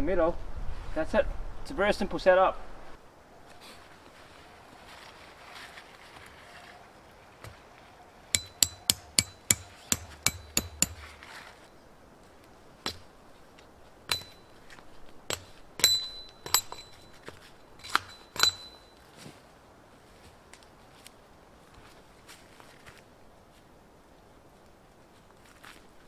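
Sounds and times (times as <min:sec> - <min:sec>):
hammer striking tent stakes: 0:08.3 - 0:11.4, 0:12.8 - 0:13.1, 0:14.1 - 0:14.5, 0:15.3 - 0:17.0, 0:17.8 - 0:18.9.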